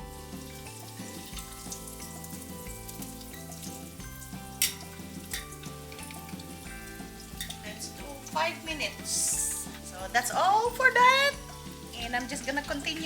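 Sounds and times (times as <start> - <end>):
background music: 0.0 - 13.0
meat deep-frying in oil: 0.0 - 13.0
crackling pops of frying: 0.2 - 13.0.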